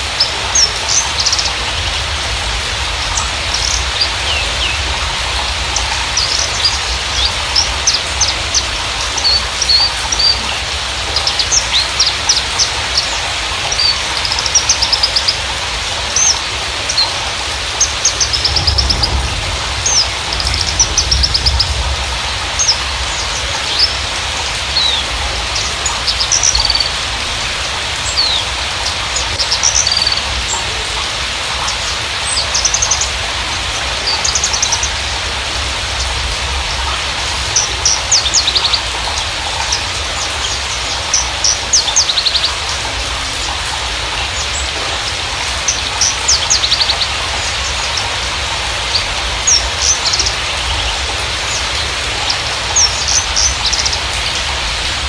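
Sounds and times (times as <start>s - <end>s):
bird singing rapid chirps and trills: 22.6s - 27.2s, 28.0s - 35.1s, 36.0s - 54.6s.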